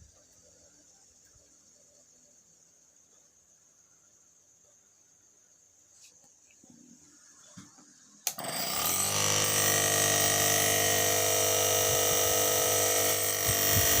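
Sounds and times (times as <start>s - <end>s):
small motor buzzing: 8.3s - 14.0s.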